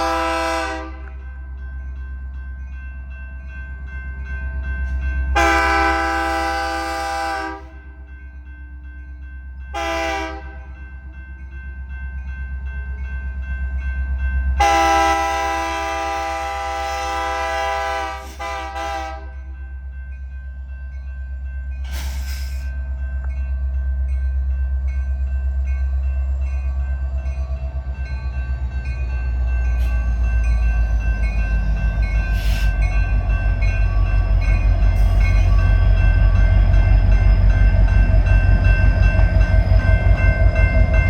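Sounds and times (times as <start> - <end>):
locomotive air horn blasts: 0.0 - 1.1, 5.4 - 7.9, 9.8 - 10.6, 14.6 - 19.4.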